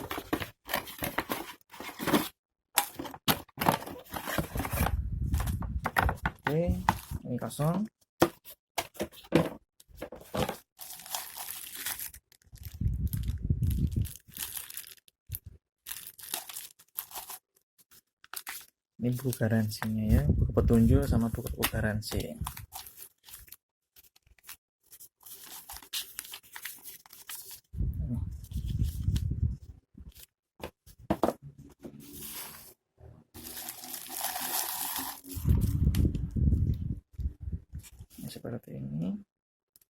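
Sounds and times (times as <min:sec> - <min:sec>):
packaging crinkling: 0:09.9 - 0:17.6, 0:33.4 - 0:35.7.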